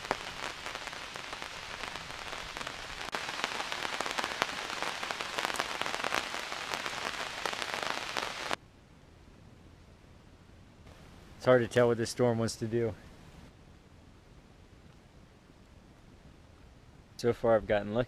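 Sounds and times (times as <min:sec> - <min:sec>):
rain pattering: 0:00.0 - 0:08.6
faint hiss: 0:00.0 - 0:18.0.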